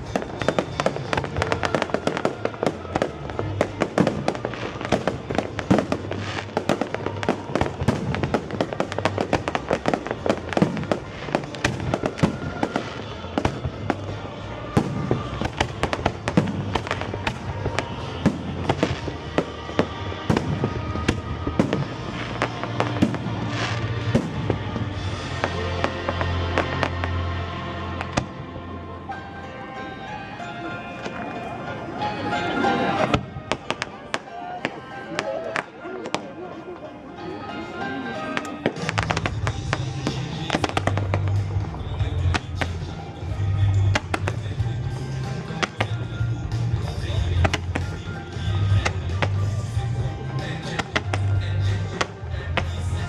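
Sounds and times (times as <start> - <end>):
fireworks bursting and crackling: 0.0 - 28.4, 30.9 - 37.0, 38.2 - 53.0
loud music: 0.0 - 53.0.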